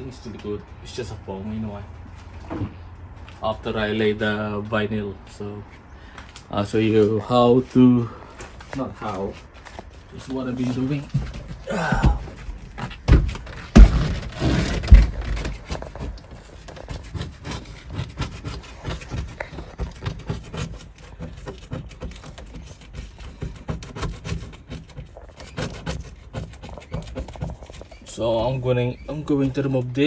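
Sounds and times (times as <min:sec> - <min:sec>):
scraping and rubbing: 0:08.5 - 0:30.0
sharp knocks: 0:11.2 - 0:15.8
small scrapes and clicks: 0:14.3 - 0:28.1.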